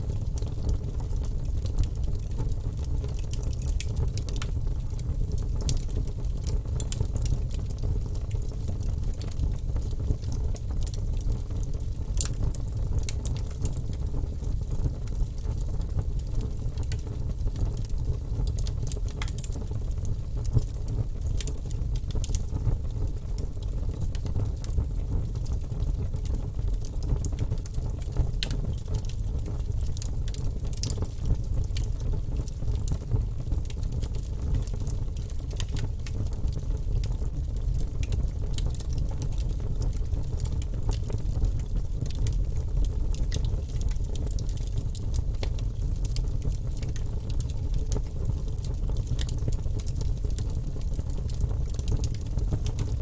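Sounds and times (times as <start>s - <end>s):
fire rumbling: 0.0s - 53.0s
wood fire crackling and popping: 0.0s - 53.0s.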